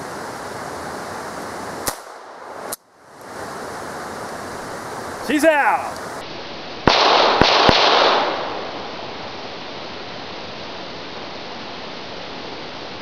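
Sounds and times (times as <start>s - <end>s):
steady hiss: 0.0s - 13.0s
pistol shot tail: 6.9s - 8.6s.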